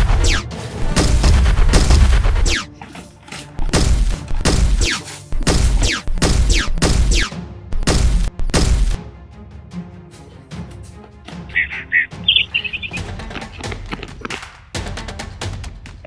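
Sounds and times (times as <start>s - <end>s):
action film music with heavy bass: 0.0s - 16.0s
falling whistles: 11.6s - 13.1s.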